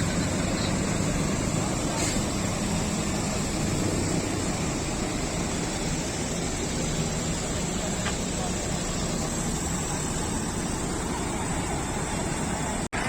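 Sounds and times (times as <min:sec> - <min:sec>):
lorry engine hum: 0:00.0 - 0:13.0
road noise: 0:00.0 - 0:13.0.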